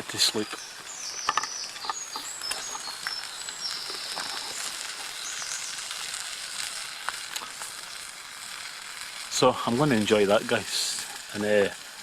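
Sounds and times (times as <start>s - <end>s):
birds singing: 0.0s - 6.2s
eggs sizzling in a frying pan: 0.0s - 12.0s.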